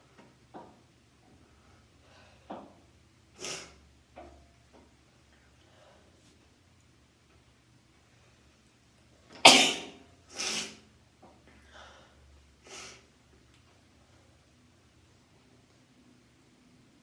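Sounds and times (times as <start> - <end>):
person sneezing: 9.4 - 10.8.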